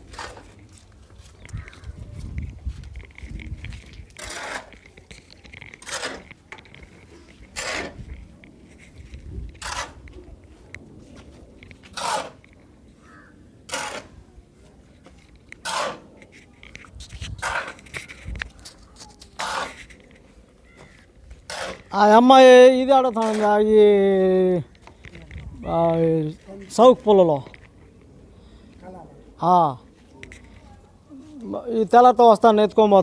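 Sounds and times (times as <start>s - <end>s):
hand tool scraping gravel: 0.0s - 0.9s, 3.8s - 10.1s, 11.8s - 12.4s, 13.7s - 14.2s, 15.5s - 22.2s, 23.1s - 23.7s.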